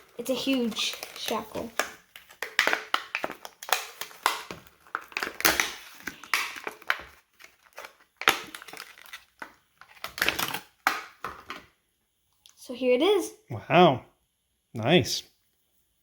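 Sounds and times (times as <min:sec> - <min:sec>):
plastic packaging tearing and crackling: 0:00.0 - 0:11.6.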